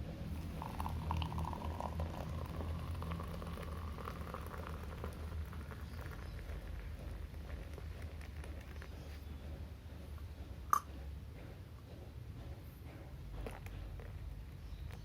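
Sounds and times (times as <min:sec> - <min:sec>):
camping stove low rumble: 0:00.0 - 0:15.0
water boiling in a pot: 0:00.2 - 0:09.4.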